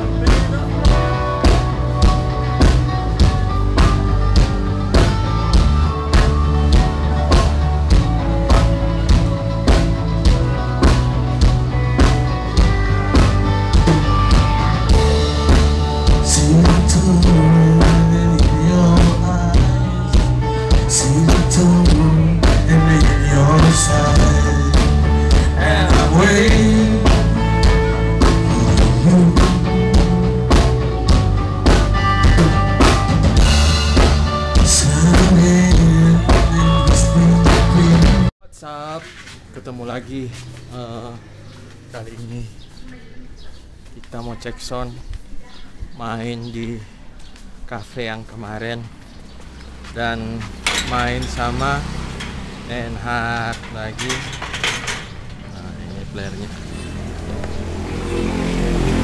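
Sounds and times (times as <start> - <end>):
rock music: 0.0 - 38.3, 49.3 - 59.0
steady drum beat: 0.0 - 38.3
held bass and melody notes: 0.0 - 38.6, 46.0 - 59.0
person singing: 12.6 - 15.2, 16.0 - 30.8, 32.3 - 33.0, 34.4 - 38.3.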